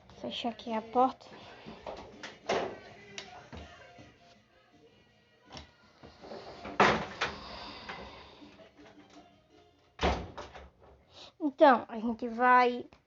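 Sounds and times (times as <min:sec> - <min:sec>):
door banging shut: 0:10.0 - 0:10.8.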